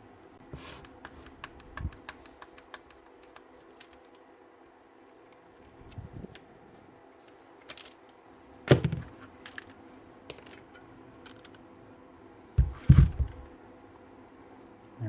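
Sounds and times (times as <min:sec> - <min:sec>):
small hard parts clicking: 0:00.9 - 0:04.3
sharp knocks on workbench: 0:12.6 - 0:13.4.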